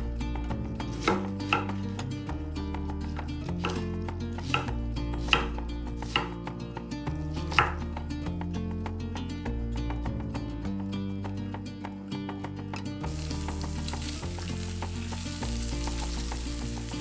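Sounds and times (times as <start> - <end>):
soft background music: 0.0 - 17.0
knife chopping on cutting board: 1.0 - 1.8, 4.4 - 4.7, 5.3 - 6.3.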